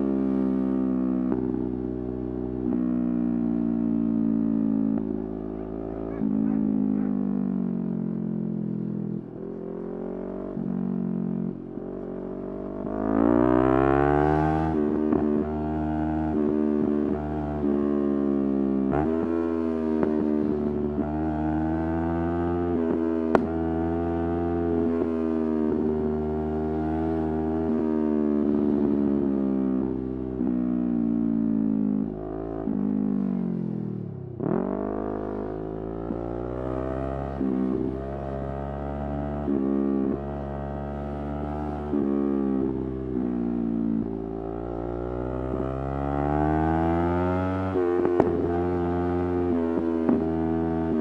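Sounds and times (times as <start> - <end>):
motorcycle engine revving: 0.0 - 51.0.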